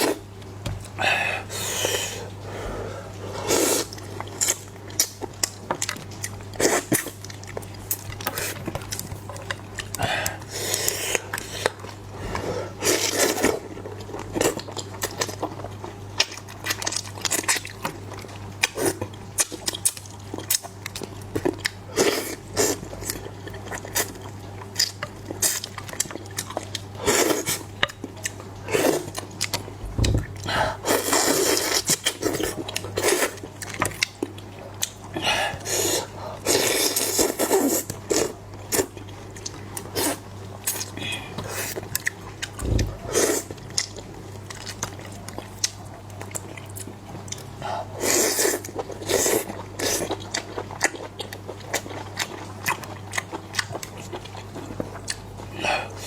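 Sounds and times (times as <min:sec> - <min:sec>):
chewing: 0:03.4 - 0:56.0
low hum: 0:29.8 - 0:30.8, 0:42.6 - 0:43.4.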